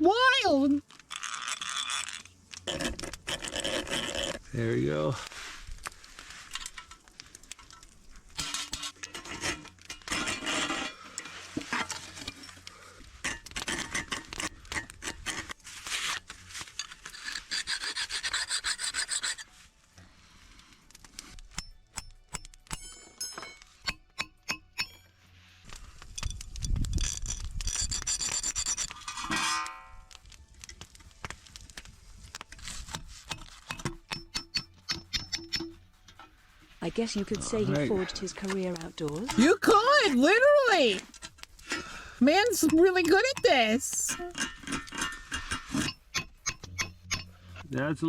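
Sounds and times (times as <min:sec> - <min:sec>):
file rasping on steel: 0:17.0 - 0:19.5
hammer striking steel: 0:21.5 - 0:25.1, 0:33.3 - 0:35.8, 0:42.5 - 0:47.4.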